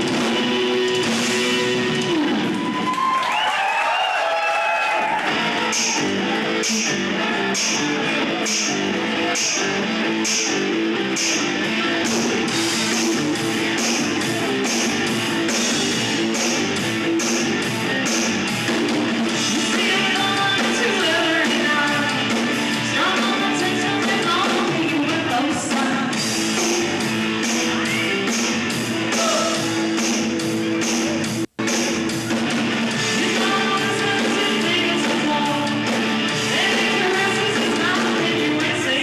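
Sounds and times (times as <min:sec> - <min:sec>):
live rock band playing: 0:00.0 - 0:03.3, 0:04.8 - 0:39.0
electric guitar: 0:04.7 - 0:39.0
person singing: 0:19.4 - 0:26.3, 0:33.0 - 0:39.0.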